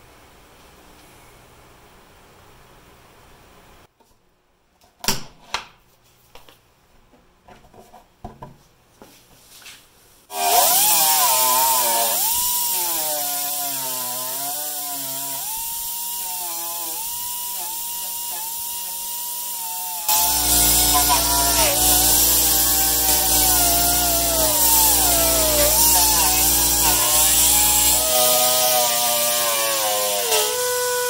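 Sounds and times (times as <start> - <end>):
electric sander whining: 10.3 - 31.0.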